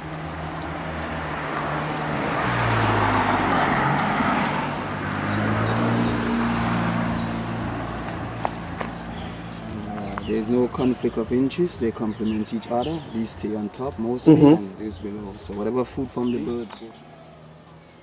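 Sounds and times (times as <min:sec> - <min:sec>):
vehicle driving past: 0:00.0 - 0:13.7.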